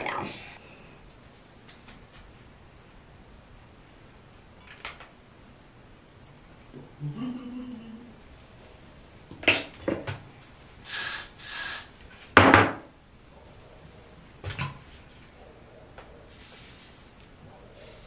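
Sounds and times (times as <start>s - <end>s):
short hissing bursts: 10.8s - 12.0s, 16.3s - 17.2s.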